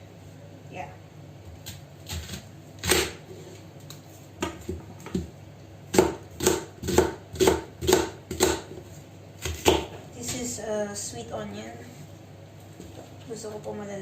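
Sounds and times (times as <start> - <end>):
knife chopping onion on board: 1.6 - 3.2, 4.4 - 5.3, 5.9 - 10.5.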